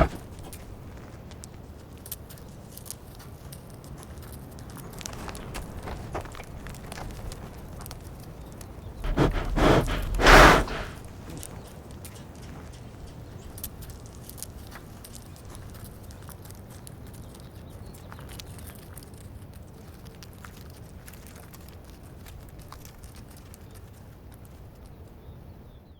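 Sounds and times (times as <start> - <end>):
reindeer footsteps and clicks: 0.0 - 25.2
steady low rumble: 9.0 - 11.0.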